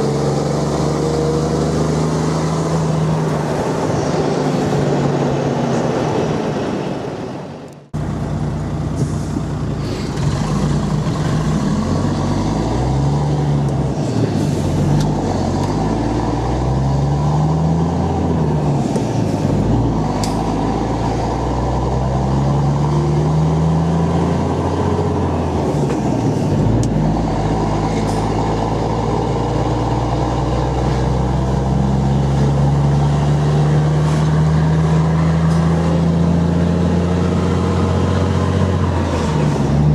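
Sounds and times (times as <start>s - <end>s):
truck diesel engine accelerating: 0.0s - 39.9s.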